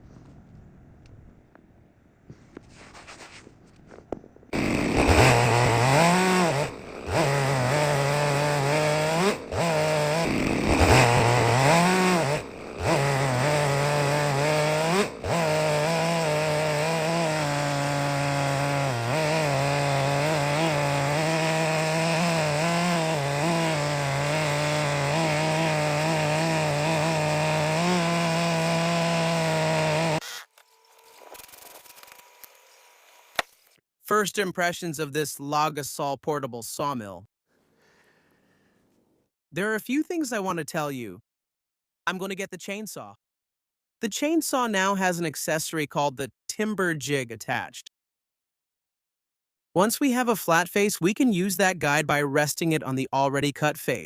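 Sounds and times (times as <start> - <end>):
chainsaw cutting wood: 4.5 - 33.8.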